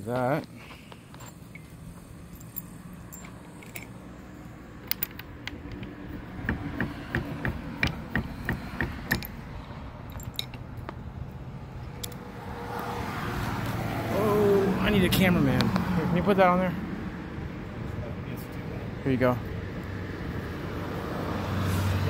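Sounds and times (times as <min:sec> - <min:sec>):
metal latch hardware clinking: 0:02.3 - 0:04.0, 0:04.8 - 0:09.4, 0:10.0 - 0:10.9.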